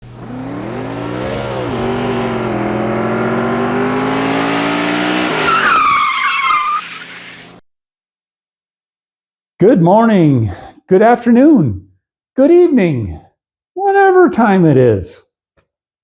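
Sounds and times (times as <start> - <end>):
car engine revving: 0.0 - 6.0
tyres squealing: 5.4 - 7.5.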